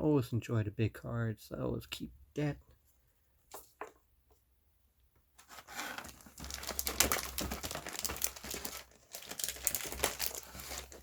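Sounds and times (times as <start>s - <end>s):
crinkly packaging rustling: 5.4s - 11.0s.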